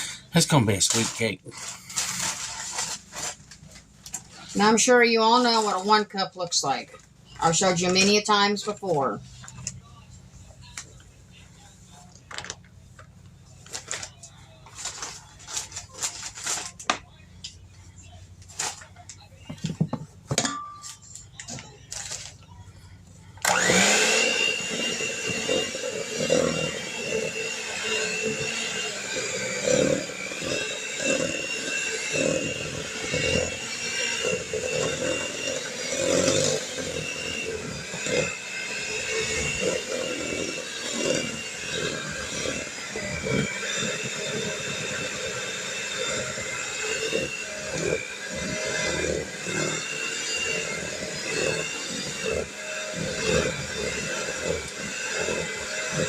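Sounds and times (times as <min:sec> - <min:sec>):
electric mixer whining: 0:00.0 - 0:10.0, 0:21.4 - 0:56.0.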